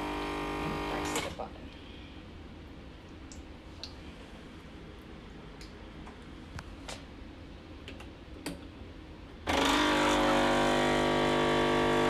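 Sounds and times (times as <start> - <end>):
coffee machine pump buzzing: 0.0 - 1.3, 9.5 - 12.0.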